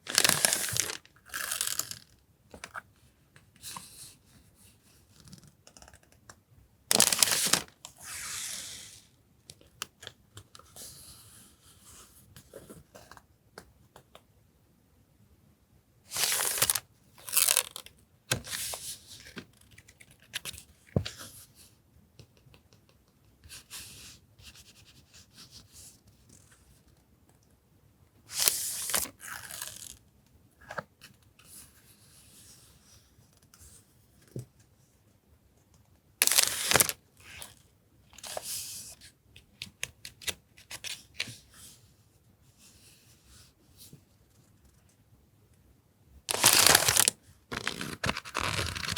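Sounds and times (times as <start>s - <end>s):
paper packaging rustling: 0.0s - 2.1s, 6.9s - 7.9s, 16.1s - 17.8s, 36.2s - 37.0s, 46.3s - 48.9s.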